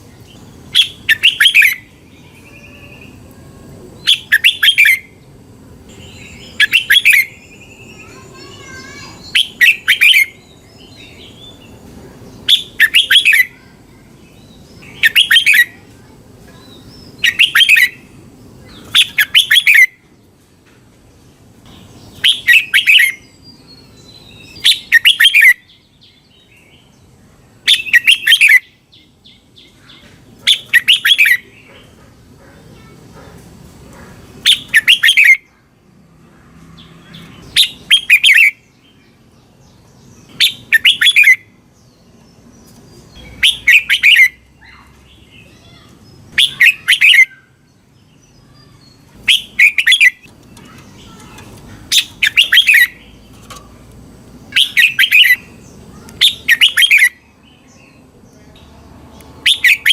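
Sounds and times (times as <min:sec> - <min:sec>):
bulbul singing warbled phrase: 0:04.0 - 0:05.2, 0:05.9 - 0:11.6, 0:12.4 - 0:18.1, 0:18.8 - 0:20.0, 0:34.4 - 0:35.5, 0:40.3 - 0:41.5, 0:43.2 - 0:47.6, 0:48.3 - 0:53.3, 0:54.5 - 0:58.7, 0:59.4 - 0:59.9
faint bird chirps: 0:05.9 - 0:20.1, 0:34.0 - 0:35.7, 0:42.7 - 0:53.8, 0:54.5 - 0:59.9.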